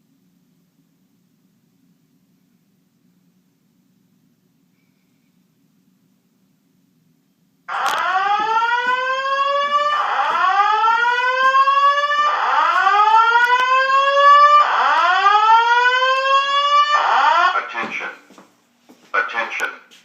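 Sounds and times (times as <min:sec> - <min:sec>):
fire alarm whoop tone: 0:07.7 - 0:17.6.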